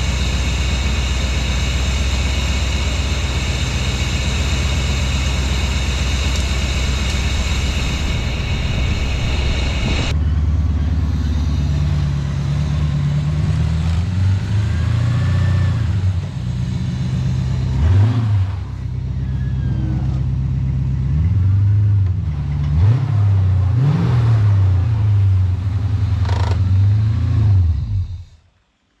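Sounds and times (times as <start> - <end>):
car engine revving: 0.0 - 10.2
steady hiss: 6.2 - 10.2.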